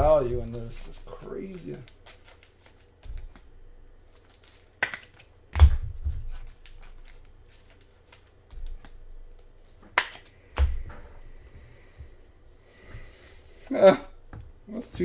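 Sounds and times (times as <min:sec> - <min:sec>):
cards flipped and rustling: 0:00.2 - 0:10.8.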